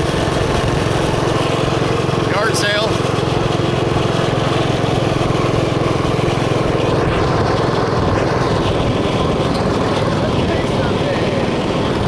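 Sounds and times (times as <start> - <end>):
mini bike engine running: 0.0 - 12.0.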